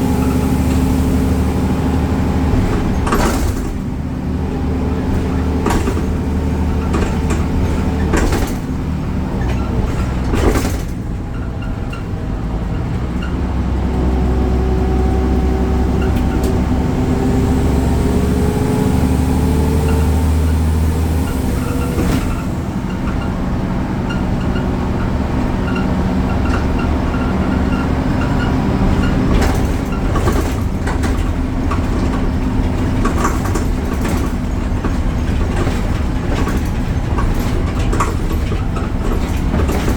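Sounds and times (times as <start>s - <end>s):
bus diesel engine running: 0.0s - 39.9s
knocks and rattles of bus body: 0.0s - 39.9s
engine whine rising in pitch: 14.0s - 23.3s.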